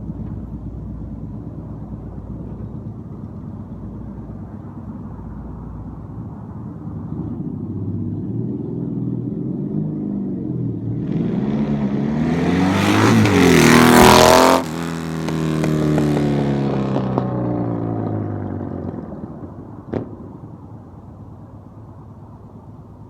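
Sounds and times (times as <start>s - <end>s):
motorcycle engine passing by: 7.0s - 20.4s.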